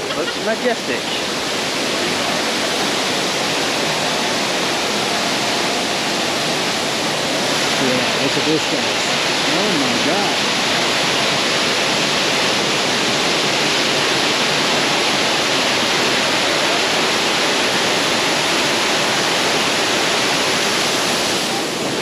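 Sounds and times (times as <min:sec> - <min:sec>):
waterfall crashing into pool: 0:00.0 - 0:22.0.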